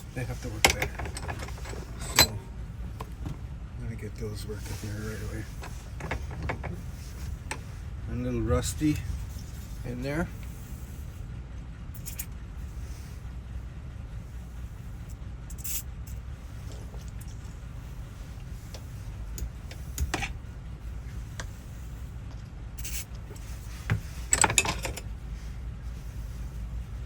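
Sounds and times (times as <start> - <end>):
lock and key clicking and rattling: 0.4 - 2.4, 5.6 - 6.9, 24.3 - 25.1.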